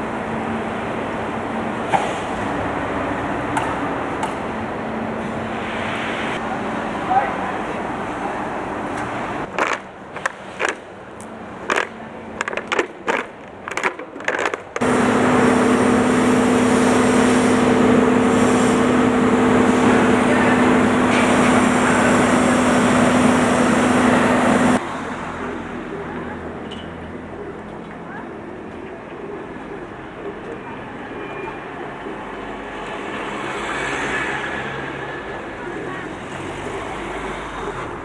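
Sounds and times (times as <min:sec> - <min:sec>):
sharp metallic clacks and knocks: 0:09.5 - 0:10.8, 0:11.7 - 0:14.8
machine hum with a whine: 0:14.8 - 0:24.8.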